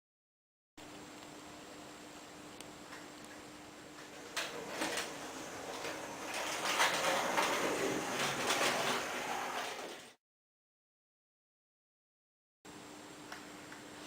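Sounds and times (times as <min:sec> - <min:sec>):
model train rattling on track: 0:04.2 - 0:10.1.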